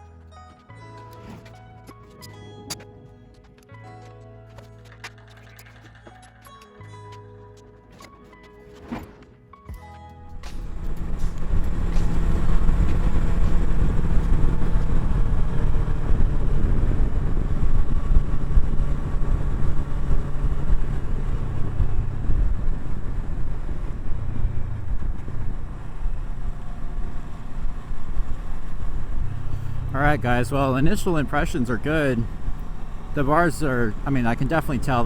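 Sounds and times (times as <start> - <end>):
wind and road noise: 0.0 - 35.0
motorcycle engine running: 10.3 - 35.0.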